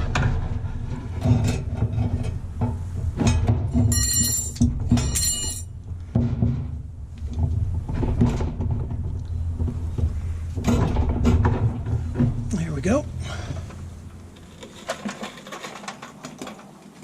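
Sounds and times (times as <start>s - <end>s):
metal parts knocking: 3.2s - 5.7s.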